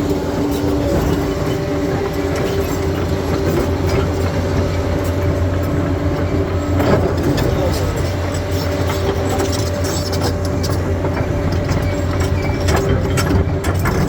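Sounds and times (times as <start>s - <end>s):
diesel engine under load: 0.0s - 14.0s
steel tracks clattering: 0.0s - 14.0s.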